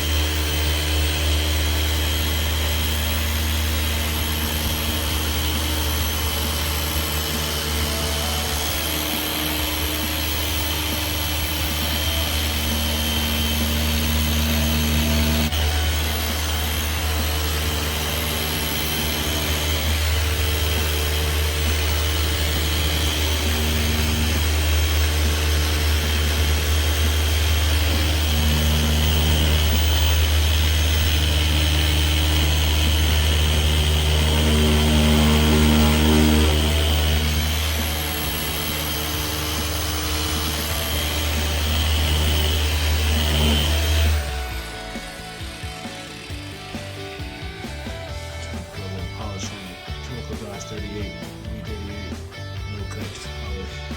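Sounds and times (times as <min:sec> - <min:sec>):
polisher humming: 0:00.0 - 0:53.9.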